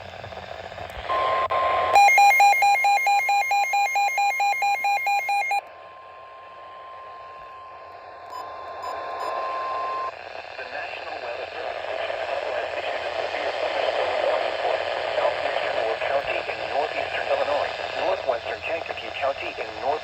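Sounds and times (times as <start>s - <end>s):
steady alarm tone: 1.1s - 10.1s
rapid alert beeps: 2.0s - 5.6s.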